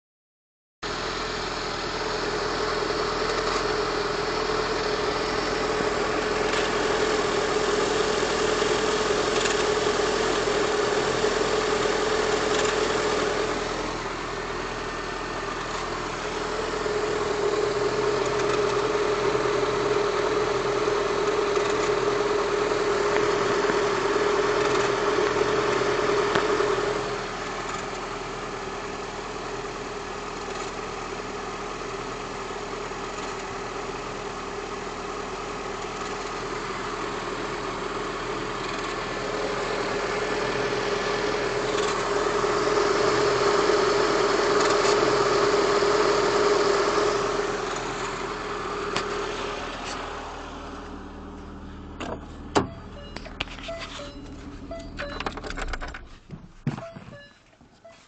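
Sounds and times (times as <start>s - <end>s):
car engine idling: 0.9s - 58.0s
engine squeak: 52.0s - 58.0s.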